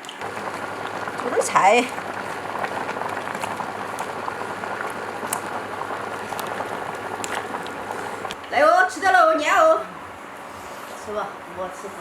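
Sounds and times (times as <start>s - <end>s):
broth bubbling: 0.0s - 8.4s.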